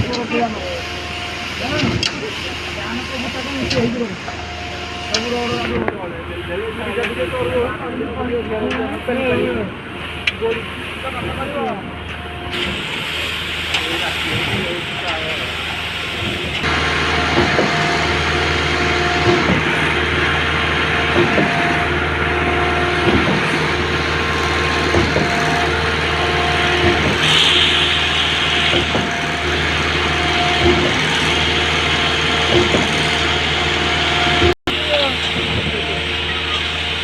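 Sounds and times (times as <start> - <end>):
concrete pump engine hum: 0.0 - 37.0
machine knocking: 1.6 - 2.4, 10.6 - 37.0
machine whine: 10.4 - 37.0.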